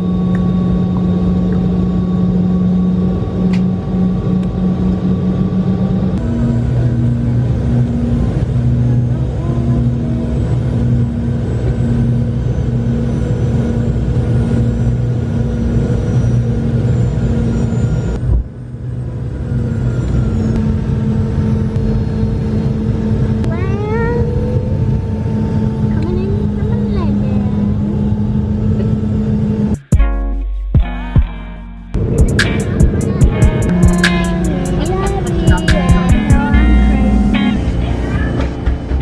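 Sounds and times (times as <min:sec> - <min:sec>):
jet airliner cabin drone: 0:00.0 - 0:39.0
short rising whine: 0:31.2 - 0:39.0.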